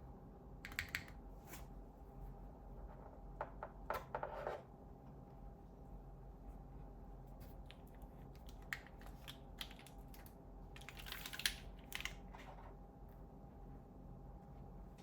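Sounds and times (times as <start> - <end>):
mechanical keyboard typing: 0.6 - 1.2.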